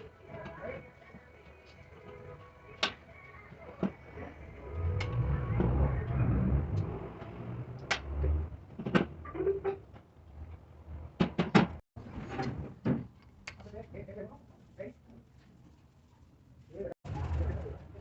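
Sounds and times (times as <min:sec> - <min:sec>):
low rumbling noise: 0:04.4 - 0:08.7.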